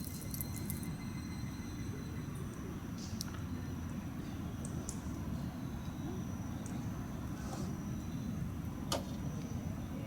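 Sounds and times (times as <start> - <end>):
campfire burning: 0.0 - 1.0.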